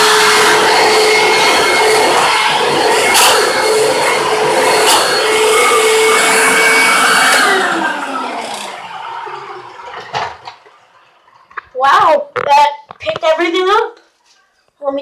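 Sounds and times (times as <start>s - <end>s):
vacuum cleaner whining: 0.0s - 11.1s.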